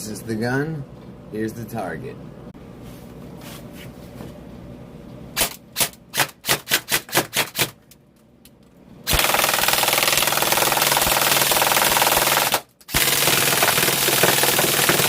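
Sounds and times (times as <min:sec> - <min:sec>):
airsoft gun full-auto burst: 0:09.1 - 0:15.0.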